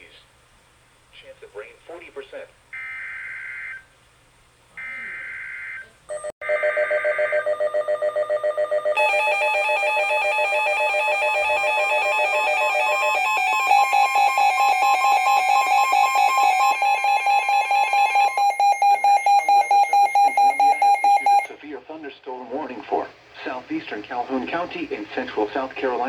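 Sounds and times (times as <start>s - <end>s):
weather radio alarm beeping: 4.8s - 21.6s.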